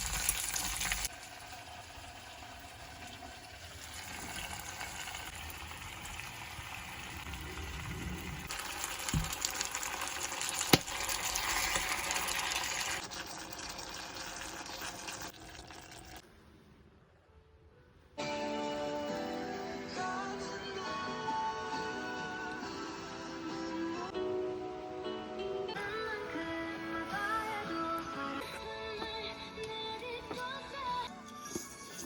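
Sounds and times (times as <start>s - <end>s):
shrimp sizzling and bubbling: 0.0s - 16.2s.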